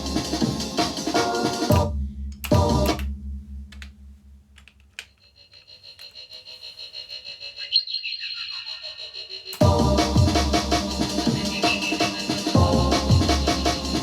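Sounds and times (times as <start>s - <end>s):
jungle breakbeat: 0.0s - 1.9s, 8.8s - 14.0s.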